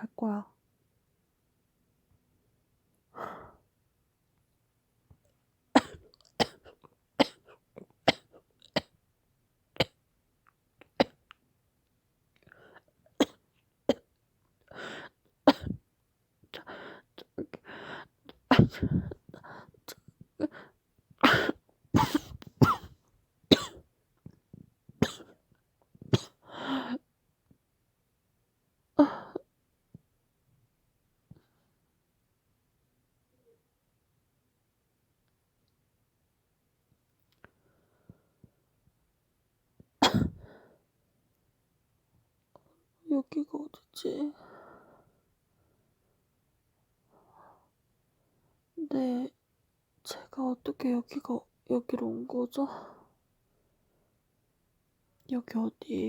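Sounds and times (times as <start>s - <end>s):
woman coughing: 5.8s - 7.5s, 15.5s - 15.8s, 18.5s - 19.1s, 21.2s - 23.8s, 25.0s - 25.4s, 26.1s - 26.4s, 40.0s - 40.4s.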